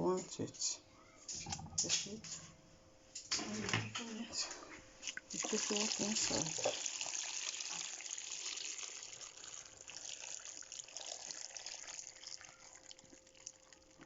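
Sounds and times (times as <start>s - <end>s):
water running from a tap: 5.2s - 14.0s.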